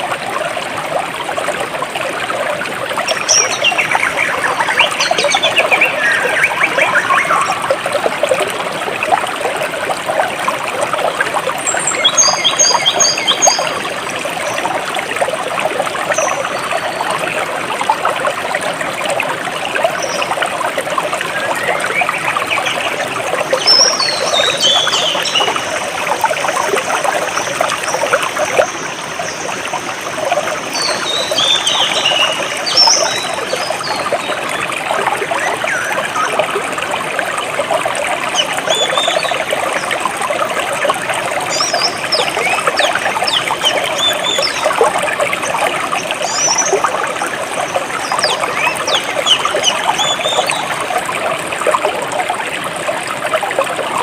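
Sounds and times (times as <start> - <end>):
stream water trickling: 0.0 - 54.0
birds chirping: 3.1 - 7.6, 30.6 - 34.3, 47.8 - 50.7.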